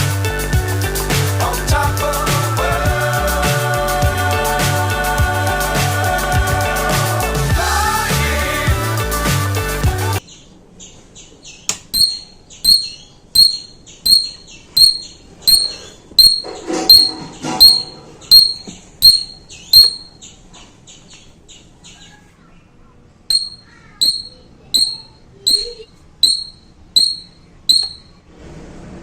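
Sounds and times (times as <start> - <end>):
short high-pitched alarm beeps: 12.0 - 20.1, 23.3 - 28.1.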